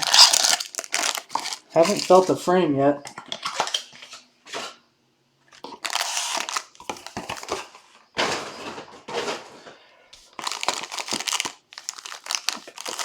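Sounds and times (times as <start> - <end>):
plastic wrappers crinkling: 0.0 - 2.5, 3.1 - 4.7, 5.5 - 7.8, 10.2 - 13.0.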